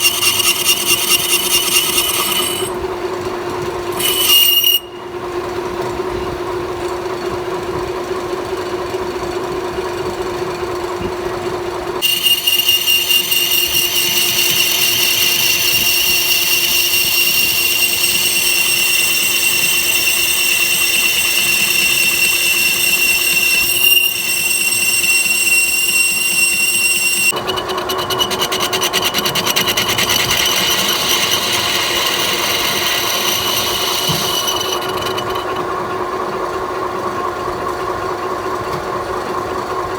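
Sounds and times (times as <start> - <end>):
fast fine rattle: 0.0 - 2.8, 27.2 - 35.7
high-pitched ringing squeal: 0.0 - 2.8, 3.9 - 5.4, 12.0 - 35.7
metal lathe humming: 0.0 - 2.9, 3.8 - 5.2, 12.0 - 36.1.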